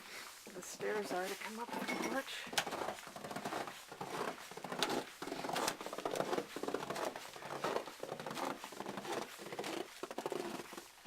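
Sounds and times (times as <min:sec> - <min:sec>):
footsteps crunching through snow: 0:00.0 - 0:10.9.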